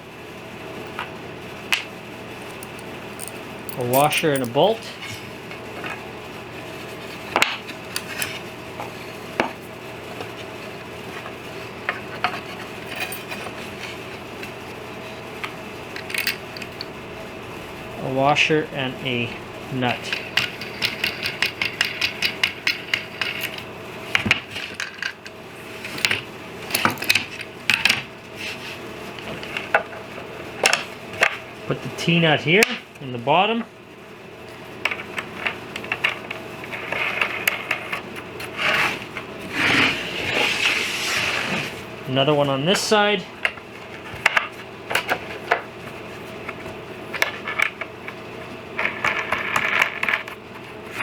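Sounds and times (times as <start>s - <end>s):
metal hardware clinking: 2.5s - 5.0s.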